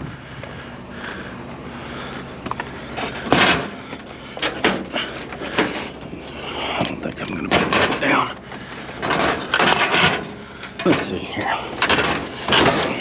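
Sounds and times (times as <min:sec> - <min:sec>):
low hum: 0:00.0 - 0:13.0
scrap knocking and clattering: 0:03.0 - 0:06.0, 0:06.6 - 0:11.2, 0:11.8 - 0:13.0.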